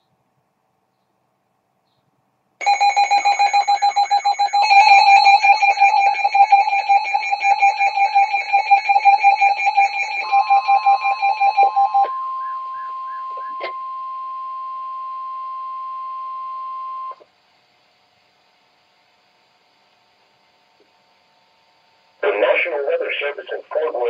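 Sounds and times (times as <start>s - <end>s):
pulsing alarm beeps: 2.6s - 17.2s
steady alarm tone: 2.6s - 17.2s.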